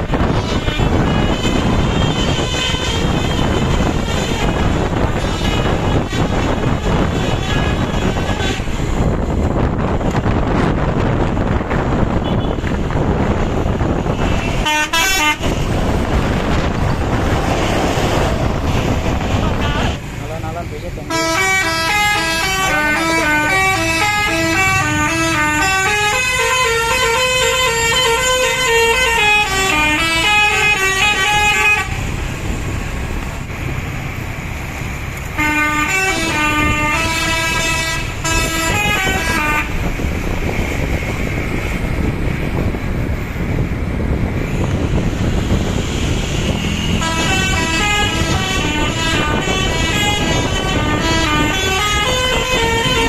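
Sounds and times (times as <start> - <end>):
bus horn playing melody: 0.0 - 9.2, 12.1 - 12.8, 14.0 - 15.9, 18.8 - 20.0, 21.1 - 32.1, 35.3 - 40.0, 46.4 - 53.0
bus engine: 0.0 - 53.0
road noise: 0.0 - 53.0.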